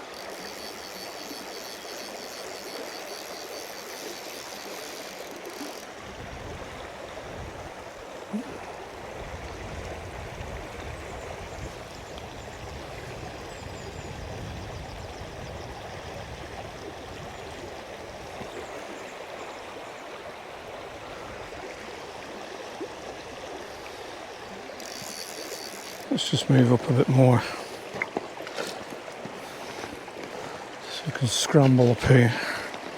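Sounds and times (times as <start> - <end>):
river water rushing: 18.6 - 32.9.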